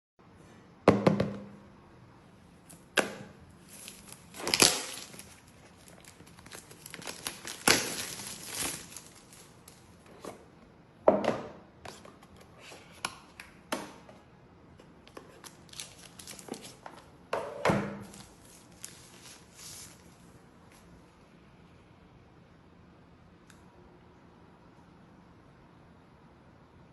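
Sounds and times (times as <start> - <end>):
packaging rustling: 3.6 - 10.1, 15.4 - 17.1, 18.0 - 20.2.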